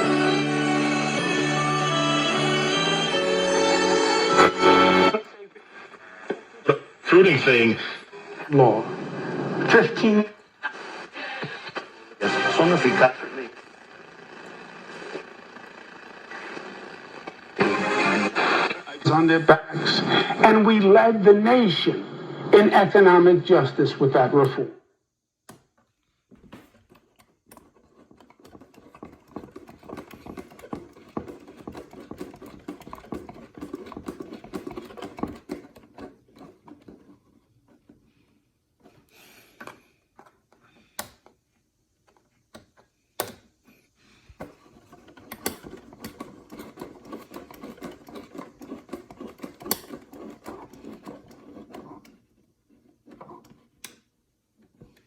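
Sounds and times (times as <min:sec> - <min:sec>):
radio static crackling: 0:04.4 - 0:24.7.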